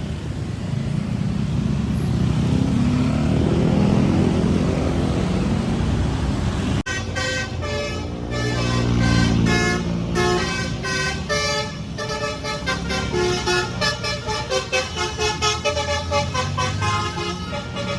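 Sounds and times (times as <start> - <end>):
multi-tone bus horn melody: 6.8 - 17.9.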